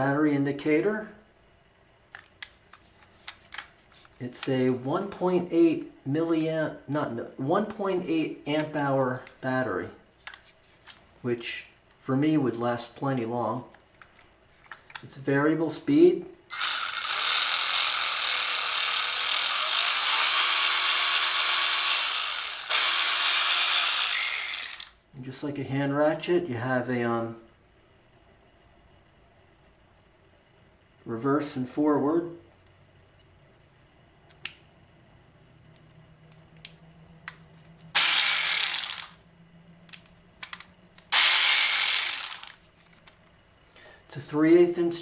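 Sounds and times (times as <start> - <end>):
cordless ratchet motor spinning: 16.5 - 25.0, 38.0 - 39.2, 41.1 - 42.6
tool handling clicks: 39.9 - 43.3.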